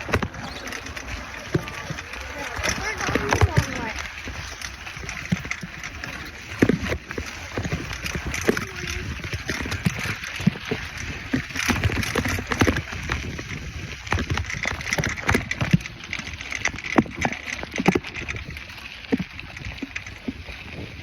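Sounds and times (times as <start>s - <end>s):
steady rushing noise: 0.0s - 16.2s
bike rattling over bumpy road: 0.0s - 21.0s.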